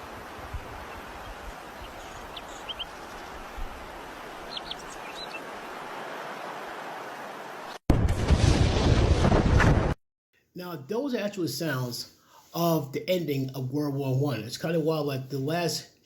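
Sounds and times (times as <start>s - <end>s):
steady outdoor hiss: 0.0s - 7.7s
high bird chirps: 1.8s - 3.0s, 4.4s - 5.4s.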